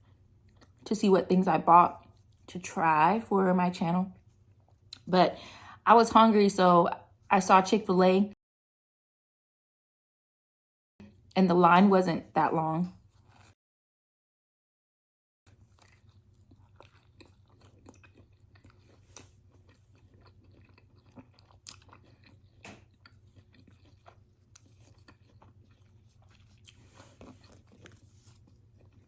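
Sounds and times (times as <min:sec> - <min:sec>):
low steady hum: 0:00.0 - 0:08.4
chewing and biting food: 0:00.1 - 0:00.8, 0:01.9 - 0:02.5, 0:13.0 - 0:13.6, 0:15.5 - 0:29.0.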